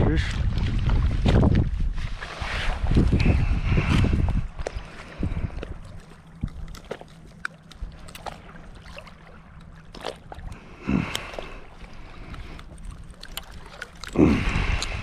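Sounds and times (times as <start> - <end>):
wind noise: 0.0 - 5.8, 14.2 - 15.0
water noise: 0.0 - 15.0
water sloshing bursts: 0.0 - 15.0.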